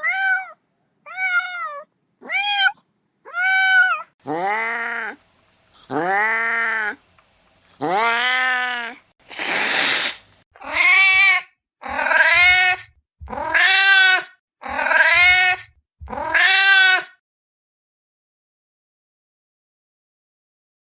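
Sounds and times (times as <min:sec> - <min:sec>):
kitten meowing: 0:00.0 - 0:05.2, 0:07.8 - 0:17.1.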